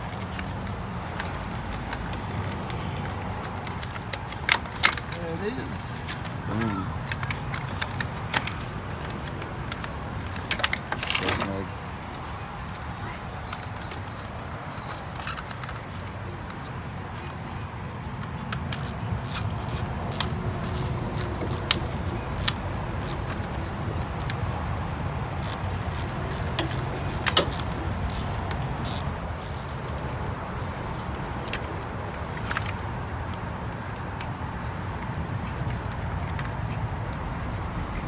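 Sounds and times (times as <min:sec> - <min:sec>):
fuses and relays clicking: 0:18.5 - 0:24.1, 0:25.3 - 0:30.1.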